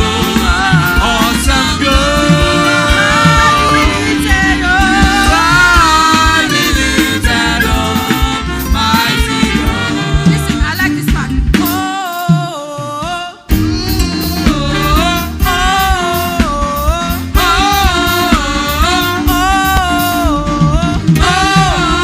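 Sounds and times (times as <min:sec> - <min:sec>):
gospel singing: 0:00.0 - 0:10.7, 0:11.5 - 0:22.0
band bass and drums: 0:00.0 - 0:22.0.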